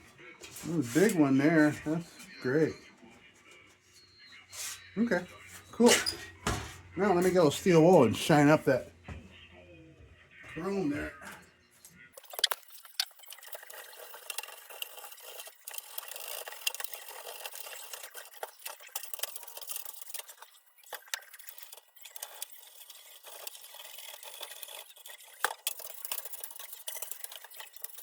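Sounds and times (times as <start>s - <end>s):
steel wool scrubbing metal: 12.2s - 28.0s.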